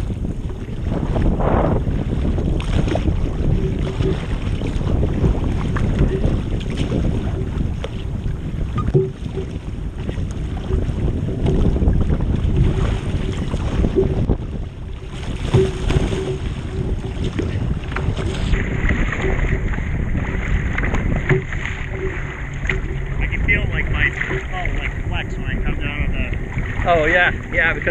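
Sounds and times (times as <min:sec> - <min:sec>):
water splashing against hull: 0:00.0 - 0:27.9
wind buffeting microphone: 0:00.0 - 0:27.9
irregular knocks: 0:08.8 - 0:09.6, 0:15.0 - 0:18.3, 0:20.9 - 0:23.2.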